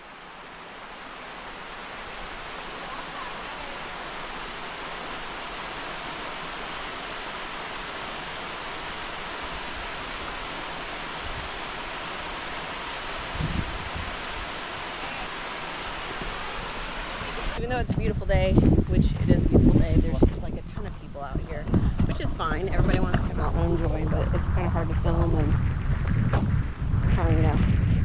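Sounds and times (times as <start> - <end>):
waterfall rushing: 0.0 - 17.7
low thumps: 17.6 - 28.0.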